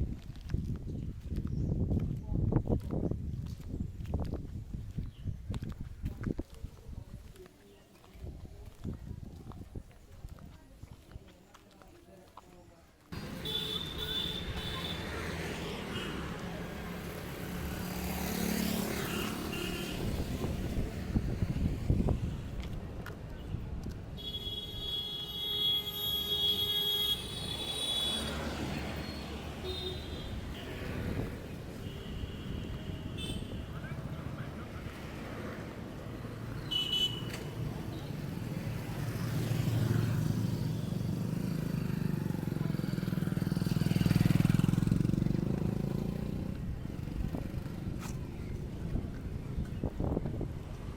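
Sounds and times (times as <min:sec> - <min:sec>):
wind buffeting microphone: 0:00.0 - 0:07.3, 0:08.2 - 0:10.9, 0:20.0 - 0:24.2, 0:44.9 - 0:50.9
vehicle engine rumbling: 0:13.2 - 0:18.0
vehicle engine passing: 0:37.6 - 0:49.1.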